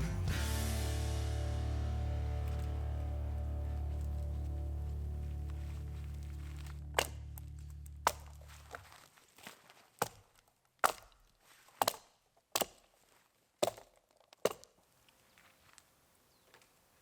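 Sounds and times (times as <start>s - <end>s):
blade chopping wood: 6.5s - 8.9s, 10.0s - 12.9s, 13.6s - 14.8s.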